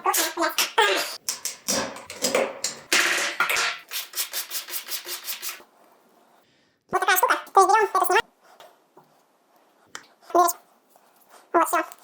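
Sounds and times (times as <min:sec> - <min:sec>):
hand sanding a wall: 0:04.0 - 0:05.6.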